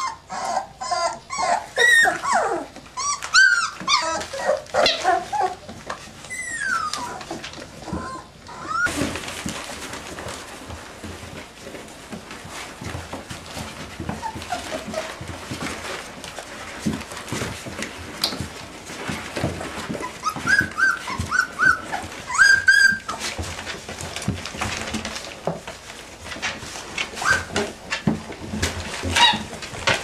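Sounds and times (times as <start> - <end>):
puppies whimpering and squealing: 0.0 - 9.2, 13.5 - 24.8, 27.1 - 30.0
rustling and shuffling: 0.0 - 30.0.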